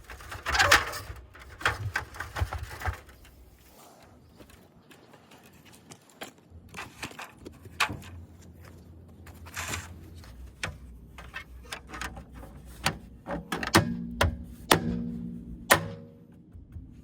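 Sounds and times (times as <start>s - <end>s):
low steady hum: 6.4s - 17.0s
clicks and knocks of tools: 9.5s - 14.4s.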